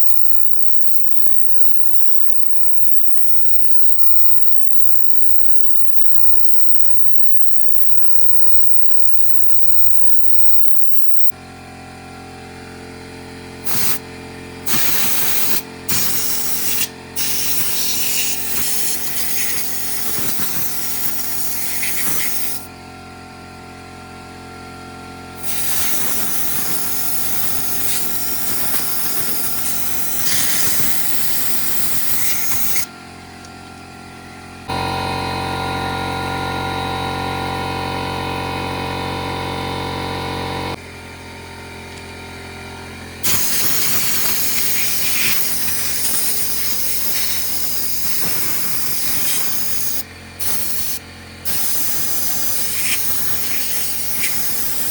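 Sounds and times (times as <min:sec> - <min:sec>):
spraying hiss bursts: 0:13.6 - 0:14.0, 0:14.7 - 0:22.7, 0:25.4 - 0:32.9, 0:43.2 - 0:54.9.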